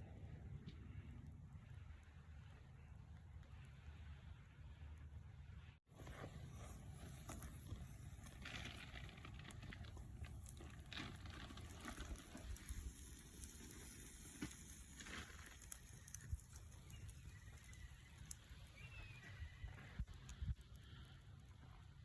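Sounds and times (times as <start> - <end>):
wood fire crackling: 5.9 - 22.0.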